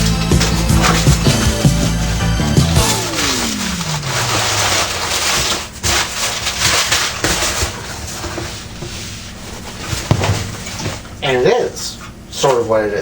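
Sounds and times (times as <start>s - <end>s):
newspaper rustling and crinkling: 0.0s - 1.8s, 2.8s - 11.2s.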